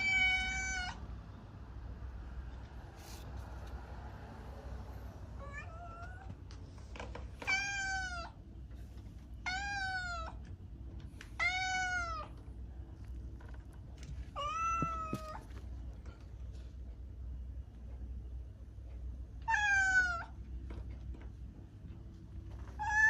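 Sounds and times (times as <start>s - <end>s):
cat meowing: 0.0s - 1.0s, 5.4s - 6.4s, 7.4s - 8.4s, 9.4s - 10.4s, 11.4s - 12.4s, 14.3s - 15.5s, 19.4s - 20.4s, 22.7s - 23.0s
low steady hum: 0.0s - 23.0s.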